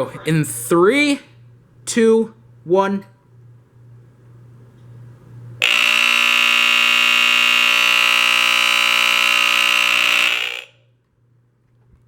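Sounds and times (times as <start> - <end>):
smoke alarm horn buzzing: 5.6 - 10.8.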